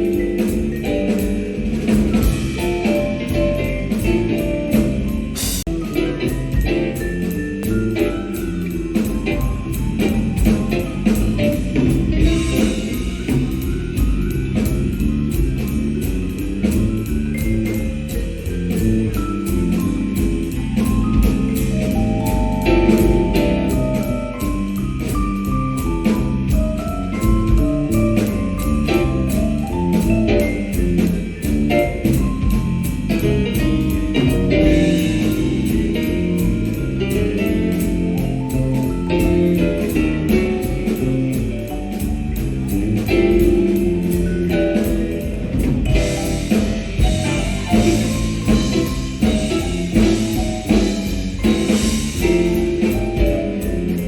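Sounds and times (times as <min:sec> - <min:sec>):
live jazz band playing swing: 0:00.0 - 0:54.0.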